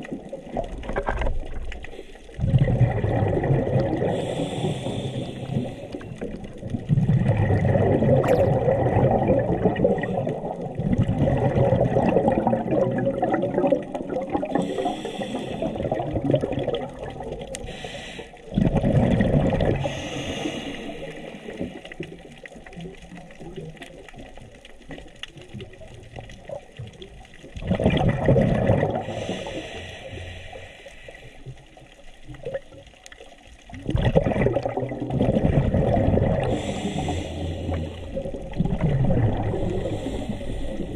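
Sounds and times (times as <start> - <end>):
bubbling exhalations underwater: 0.0 - 17.8, 18.4 - 24.5, 25.4 - 29.8, 33.7 - 40.9
hissing regulator inhalations: 4.1 - 6.2, 14.6 - 16.0, 17.6 - 18.5, 19.8 - 22.0, 29.0 - 31.6, 36.4 - 38.3, 39.5 - 40.9.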